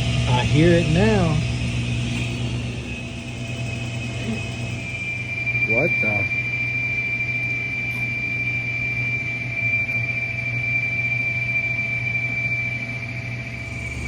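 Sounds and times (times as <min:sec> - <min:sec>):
washing machine hum: 0:00.0 - 0:05.3, 0:13.4 - 0:14.0
high-pitched whistle: 0:02.9 - 0:14.0.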